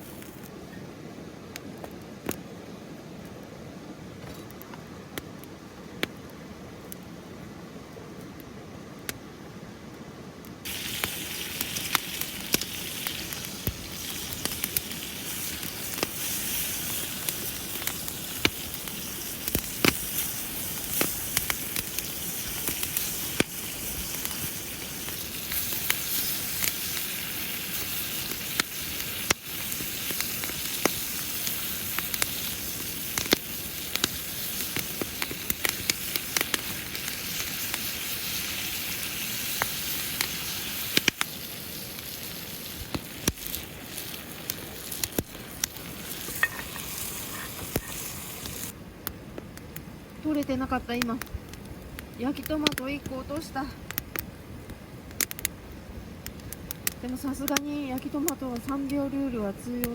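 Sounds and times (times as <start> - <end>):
food sizzling on a grill: 0.0 - 0.5, 10.6 - 48.8, 52.2 - 54.1, 56.4 - 59.9
campfire pops and crackles: 0.0 - 0.6, 1.5 - 2.6, 4.2 - 7.1, 8.2 - 9.3, 10.4 - 59.9.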